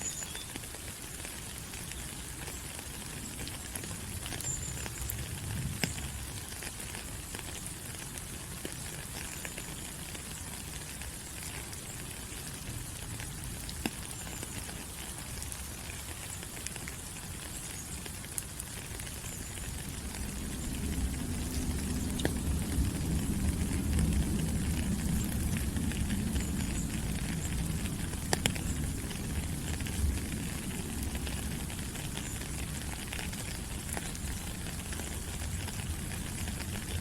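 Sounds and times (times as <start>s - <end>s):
rain falling on foliage: 0.0s - 37.0s.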